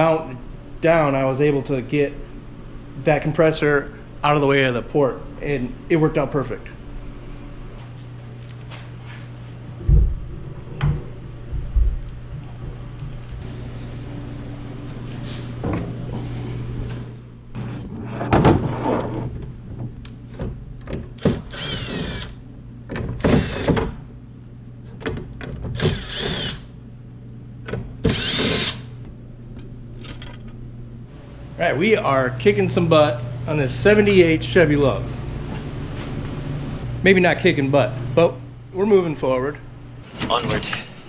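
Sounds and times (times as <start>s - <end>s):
steady low hum: 0.0s - 41.0s
power drill whining: 21.2s - 22.4s, 23.2s - 23.8s, 25.8s - 26.6s, 28.1s - 28.9s.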